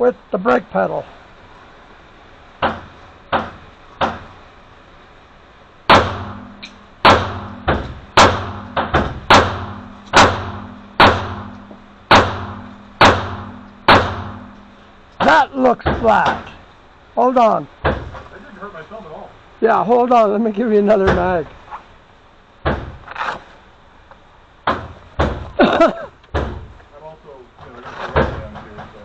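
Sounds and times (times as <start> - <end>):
pistol shots with ringing tail: 5.9 - 14.8.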